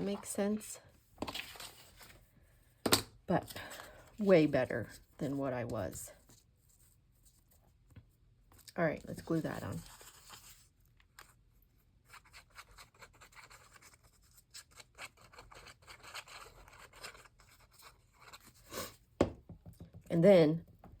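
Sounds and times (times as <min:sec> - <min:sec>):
paper rubbing and rustling: 0:09.2 - 0:10.7.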